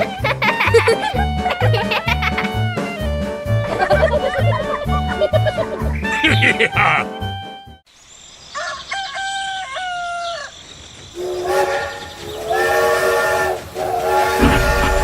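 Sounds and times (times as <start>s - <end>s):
rooster crowing: 8.6s - 10.5s
train horn blasts: 11.2s - 15.0s.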